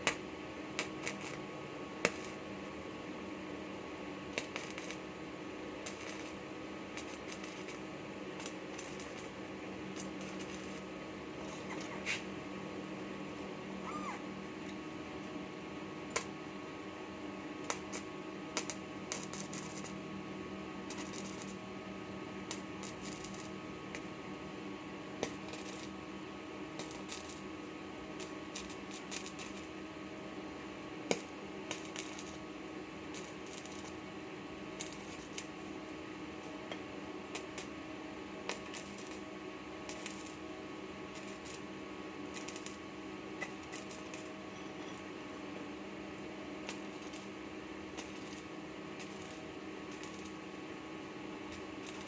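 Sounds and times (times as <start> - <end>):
electrical hum: 0.0 - 52.0
welding arc crackling: 0.8 - 1.4, 2.0 - 2.4, 4.3 - 5.1, 5.8 - 10.9, 17.6 - 20.0, 20.9 - 21.6, 22.4 - 24.1, 25.2 - 26.0, 26.8 - 27.5, 28.2 - 29.7, 31.1 - 32.4, 33.0 - 34.0, 34.8 - 35.6, 37.3 - 37.7, 38.5 - 39.3, 39.9 - 40.4, 41.1 - 42.8, 43.4 - 44.3, 46.6 - 50.4, 51.5 - 52.0.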